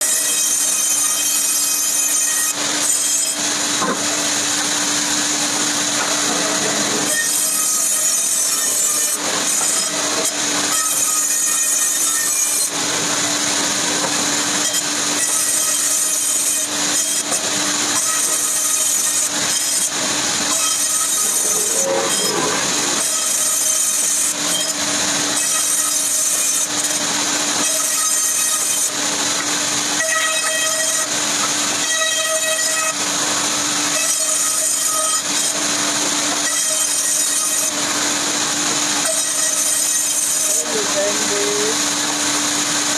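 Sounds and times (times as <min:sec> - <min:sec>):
power saw cutting wood: 0:00.0 - 0:42.9.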